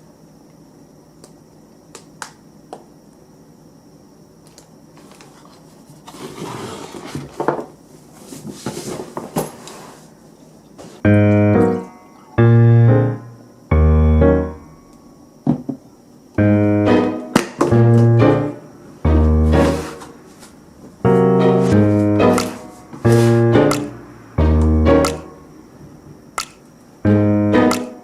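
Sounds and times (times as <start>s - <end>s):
piano chords: 11.0s - 15.2s, 16.4s - 25.8s, 27.0s - 28.0s
rustling handling noise: 19.5s - 23.5s.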